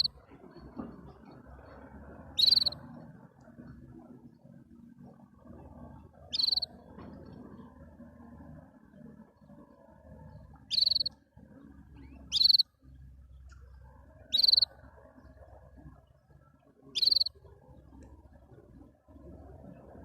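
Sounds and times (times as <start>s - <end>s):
canary trilled chirps: 2.4s - 2.8s, 6.2s - 6.8s, 10.6s - 11.2s, 12.0s - 12.7s, 14.2s - 14.8s, 16.9s - 17.4s.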